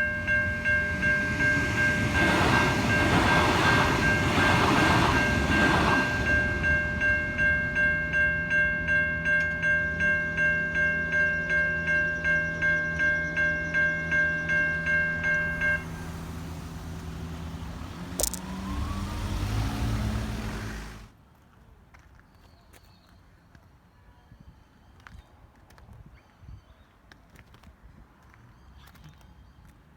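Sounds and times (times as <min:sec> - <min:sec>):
level crossing bells ringing: 0:00.0 - 0:21.0
passing train: 0:00.0 - 0:21.1.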